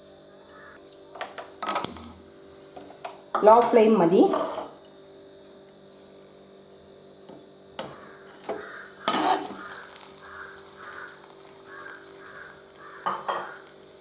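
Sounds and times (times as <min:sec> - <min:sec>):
omelette frying: 0:08.0 - 0:14.0.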